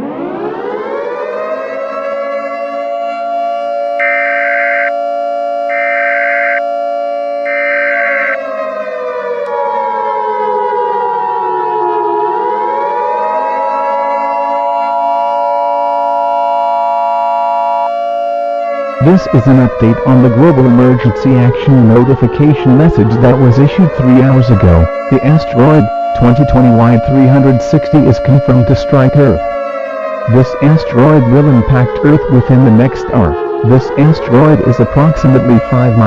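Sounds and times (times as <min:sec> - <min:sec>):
warning siren wailing: 0:00.0 - 0:36.0
steady higher tone: 0:03.0 - 0:08.4, 0:22.7 - 0:29.6.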